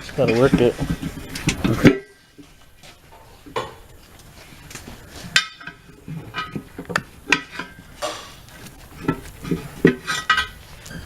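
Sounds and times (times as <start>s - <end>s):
metal tools clanking on wheel: 0.0s - 11.0s.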